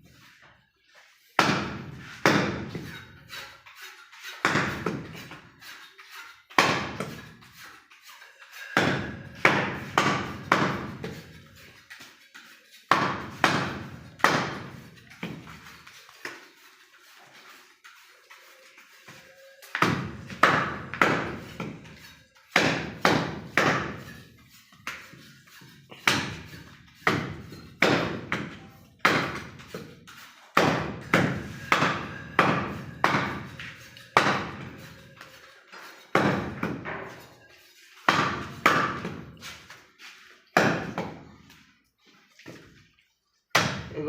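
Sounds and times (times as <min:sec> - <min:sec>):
cleaver chopping meat and bone: 0:01.4 - 0:03.0, 0:06.6 - 0:07.2, 0:08.8 - 0:11.3, 0:12.9 - 0:15.4, 0:19.7 - 0:21.9, 0:22.5 - 0:24.2, 0:25.9 - 0:29.9, 0:30.6 - 0:34.8, 0:38.1 - 0:39.4, 0:40.6 - 0:41.2, 0:43.6 - 0:43.9.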